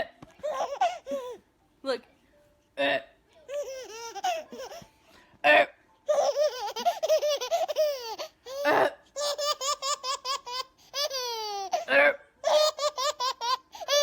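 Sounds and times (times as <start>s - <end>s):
baby laughing: 0.4s - 1.4s, 3.5s - 4.9s, 6.1s - 14.0s.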